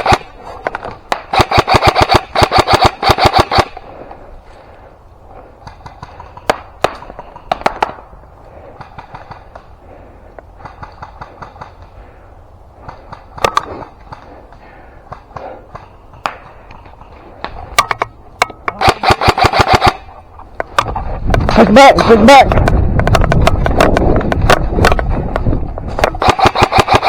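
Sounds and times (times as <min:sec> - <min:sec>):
distant gun bursts: 0:00.0 - 0:00.4, 0:01.1 - 0:03.9, 0:18.7 - 0:20.3, 0:26.0 - 0:27.0
airsoft gun bursts: 0:01.1 - 0:03.8, 0:18.8 - 0:20.1, 0:26.1 - 0:27.0.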